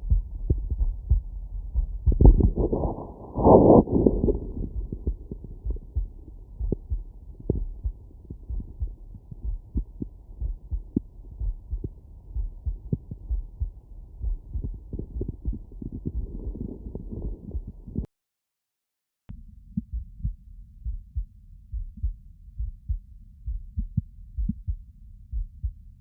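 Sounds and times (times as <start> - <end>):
heartbeat through stethoscope: 0.0 - 18.1, 19.8 - 25.9.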